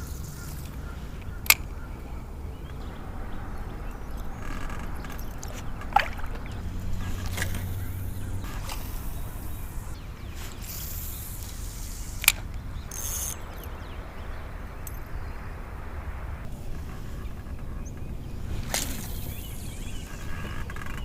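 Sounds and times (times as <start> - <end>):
steady low rumble: 0.0 - 20.6
water sloshing against kayak hull: 1.2 - 10.6.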